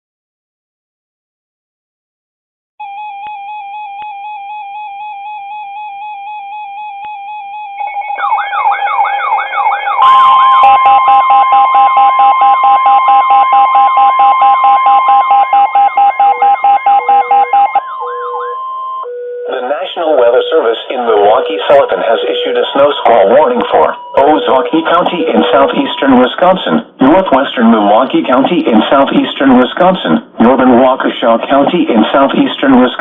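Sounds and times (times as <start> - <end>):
steady alarm tone: 2.8 - 27.8
wavering siren-like sweeps: 3.6 - 19.6
rapid electronic beeping: 7.3 - 27.4
warbling alert tone: 7.6 - 26.4.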